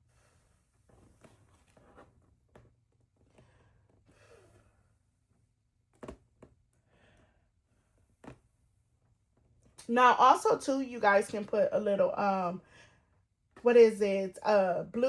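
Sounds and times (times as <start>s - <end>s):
faint breaths blowing: 12.6s - 13.3s.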